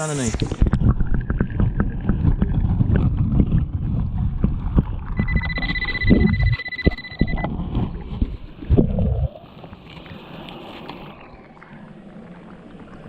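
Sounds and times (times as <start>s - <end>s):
underwater turbulent water churning: 0.3s - 13.0s
steady high tone: 5.2s - 7.5s.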